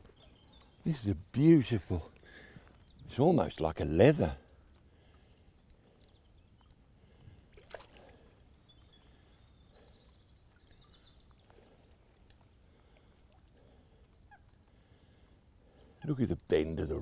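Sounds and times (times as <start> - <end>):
faint ticks: 4.6 - 7.4, 10.0 - 15.4.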